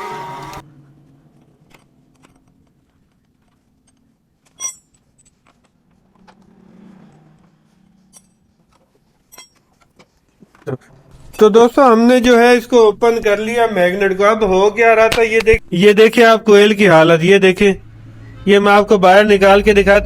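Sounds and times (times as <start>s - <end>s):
metal tools clinking: 3.8s - 5.8s, 9.2s - 9.8s.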